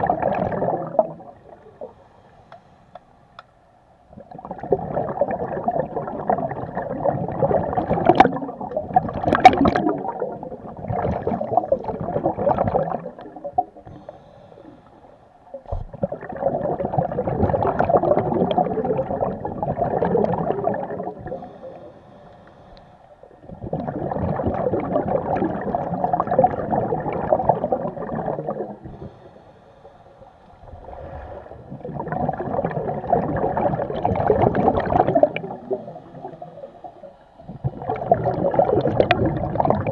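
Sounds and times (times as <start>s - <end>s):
scuba regulator exhaled air bubbling: 0.0s - 2.1s, 4.1s - 39.9s.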